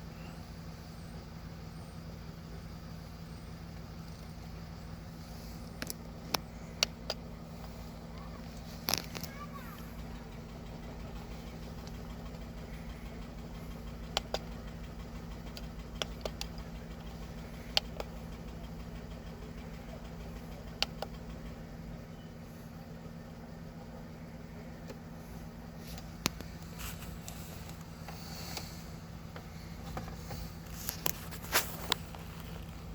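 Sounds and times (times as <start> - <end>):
car engine idling: 0.0 - 32.9
sharp clicks: 5.7 - 21.7, 25.8 - 32.8.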